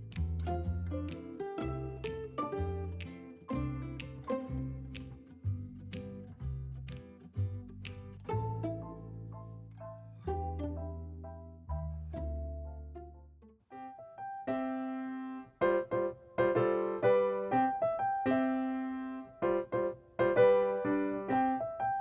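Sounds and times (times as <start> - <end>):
light piano tune: 0.0 - 22.0.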